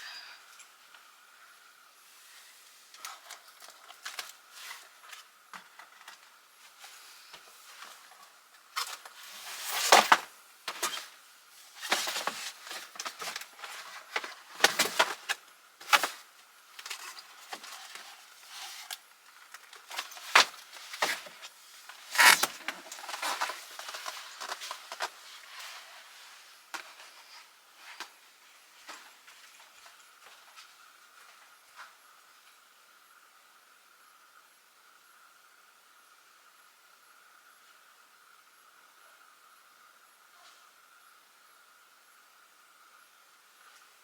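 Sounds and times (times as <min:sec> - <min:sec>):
rustling: 0:02.1 - 0:31.9.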